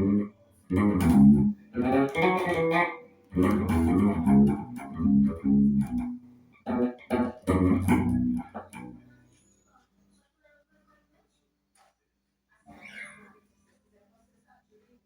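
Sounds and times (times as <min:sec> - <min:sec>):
electric bass plucked notes: 0:00.0 - 0:09.0.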